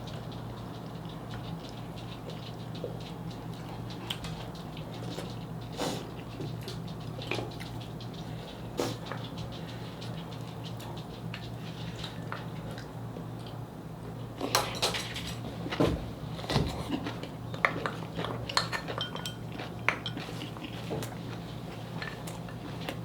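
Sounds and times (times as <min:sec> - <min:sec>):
metal utensils clinking on dishes: 0:14.4 - 0:15.4, 0:18.5 - 0:20.7.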